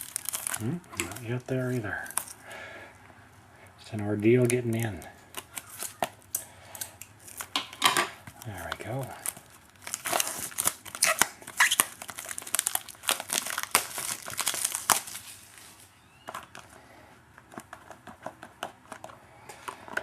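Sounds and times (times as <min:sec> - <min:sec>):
card pack wrapper crinkling: 0:00.0 - 0:02.4, 0:04.1 - 0:16.8
cards ticking and rustling: 0:00.0 - 0:02.4, 0:04.0 - 0:20.0.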